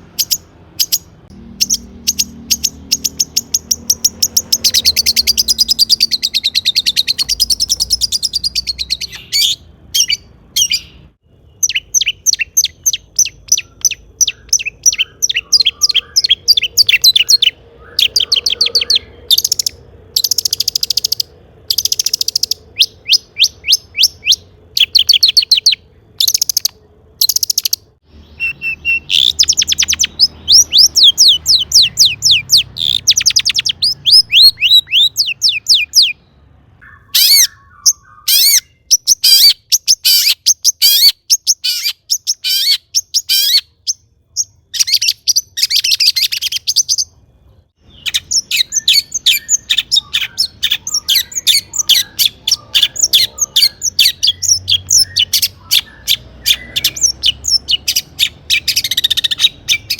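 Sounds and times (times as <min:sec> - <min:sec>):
bird singing high notes: 0:00.2 - 0:21.0.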